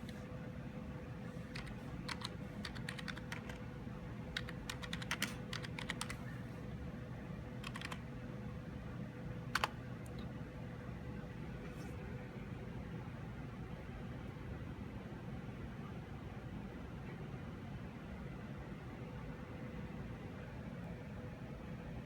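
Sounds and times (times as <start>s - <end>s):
steady low hum: 0.0s - 22.0s
keyboard typing clicks: 1.5s - 3.6s, 4.4s - 6.2s, 7.6s - 8.0s, 9.5s - 10.2s.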